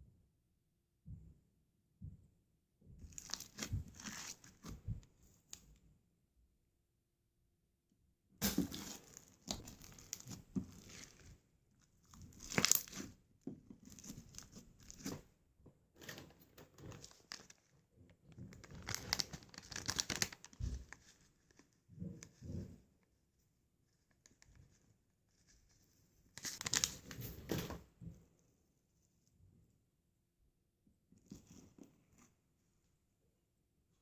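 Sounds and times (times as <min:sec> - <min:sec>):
slime crackling and popping: 0:12.1 - 0:13.1.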